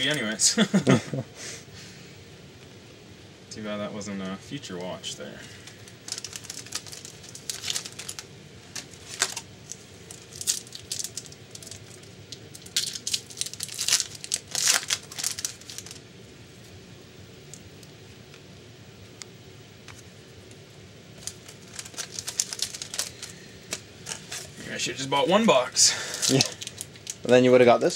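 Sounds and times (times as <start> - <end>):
wrapper and cards crinkling: 5.6 - 16.0, 21.2 - 24.6, 26.0 - 27.3.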